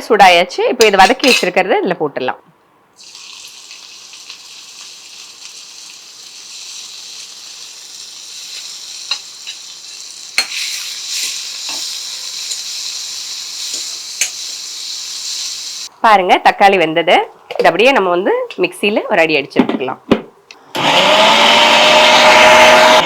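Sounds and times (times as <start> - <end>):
spices sizzling in hot oil: 3.0 - 15.9.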